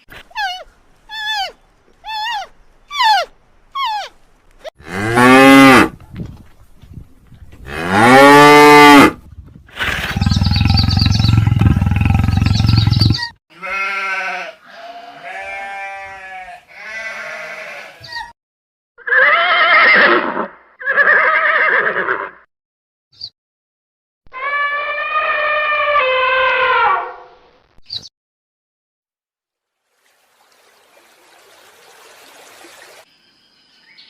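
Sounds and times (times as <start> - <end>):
animal calls: 0.1 - 4.7.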